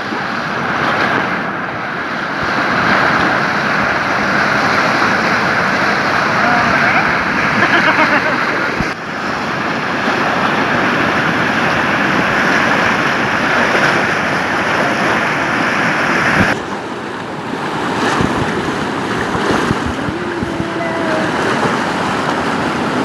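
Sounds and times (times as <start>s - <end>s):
loud rushing water: 0.0s - 23.0s
wind buffeting microphone: 16.2s - 23.0s.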